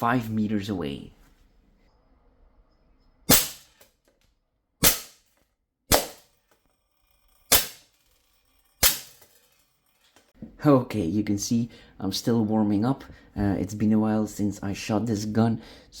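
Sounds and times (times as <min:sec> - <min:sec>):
air pistol shots: 0:03.3 - 0:03.8, 0:04.8 - 0:05.2, 0:05.9 - 0:06.3, 0:07.5 - 0:07.9, 0:08.8 - 0:09.2.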